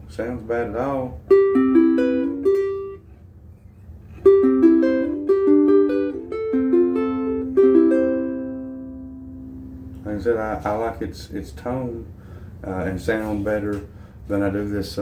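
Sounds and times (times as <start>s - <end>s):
ukulele fingerstyle plucking: 1.2s - 3.1s, 4.1s - 10.0s.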